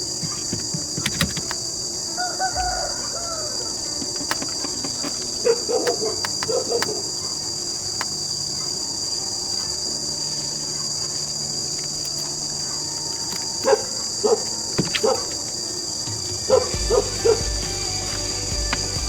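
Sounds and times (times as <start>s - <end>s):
insects chirping chorus: 0.0s - 19.0s
dog barking: 5.2s - 9.8s, 12.3s - 15.8s, 16.4s - 17.7s.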